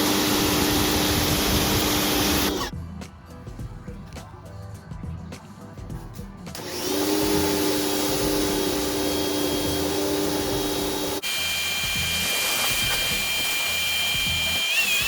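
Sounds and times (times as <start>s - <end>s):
pressure washer motor hum: 0.0s - 2.7s, 6.6s - 15.0s.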